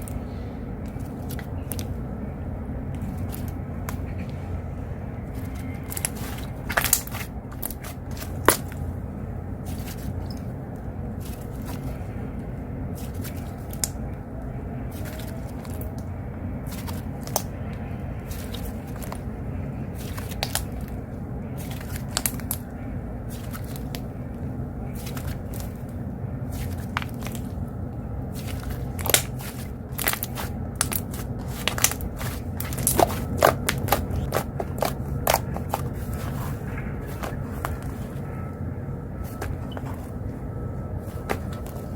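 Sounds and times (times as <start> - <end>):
low rumble of outdoor noise: 0.0 - 41.9
slime squishing with crackling pops: 5.3 - 8.9, 14.8 - 24.1, 24.8 - 38.5.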